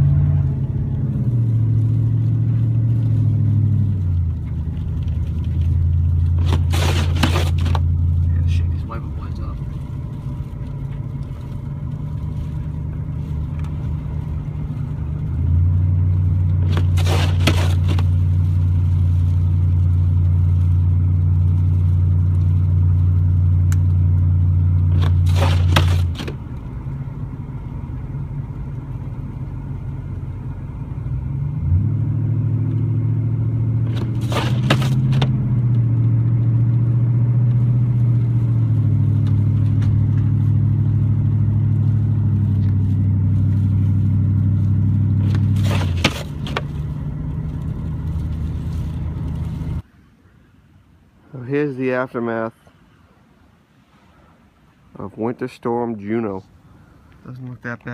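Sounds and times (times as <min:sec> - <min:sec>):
car engine and road drone: 0:00.0 - 0:57.9
short scrapes: 0:06.3 - 0:07.9, 0:16.6 - 0:18.2, 0:24.9 - 0:26.3, 0:33.8 - 0:35.2, 0:45.2 - 0:46.6.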